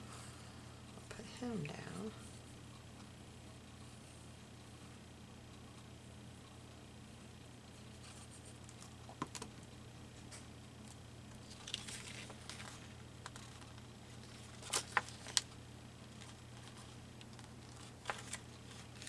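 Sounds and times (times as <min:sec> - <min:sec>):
faint room hum: 0:00.0 - 0:19.0
paper rustling: 0:11.4 - 0:15.5, 0:16.1 - 0:19.0.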